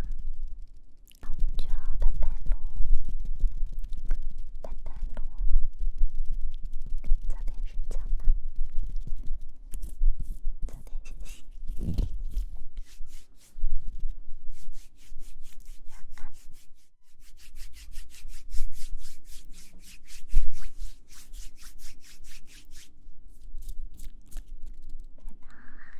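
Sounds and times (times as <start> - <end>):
low rumble: 0.0 - 16.4
soft scratchy rubbing strokes: 0.0 - 25.9.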